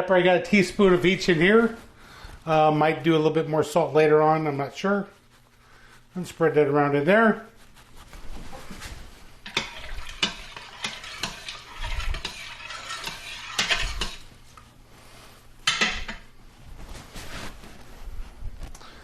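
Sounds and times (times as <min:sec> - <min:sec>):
utensil scraping metal pot: 0:09.4 - 0:14.4, 0:15.7 - 0:16.3
utensil stirring in metal pot: 0:09.4 - 0:14.6, 0:15.6 - 0:16.3.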